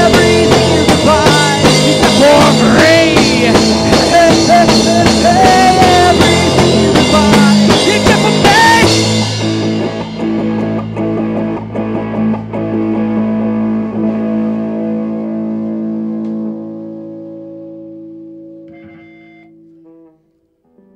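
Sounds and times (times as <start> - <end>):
drum kit: 0.0 - 17.3
bass guitar: 0.0 - 20.9
distorted electric guitars: 0.0 - 20.9.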